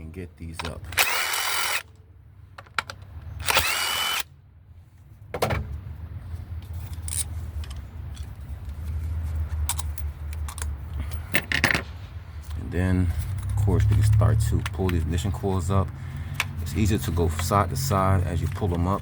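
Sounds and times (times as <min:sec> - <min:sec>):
power driver spinning bolts: 0:00.7 - 0:01.9, 0:03.4 - 0:04.2
bolts and tool rattling: 0:09.4 - 0:12.6.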